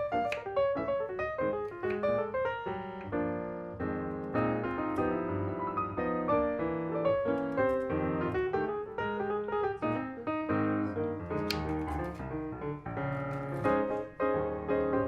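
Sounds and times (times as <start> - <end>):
piano music: 0.0 - 15.0.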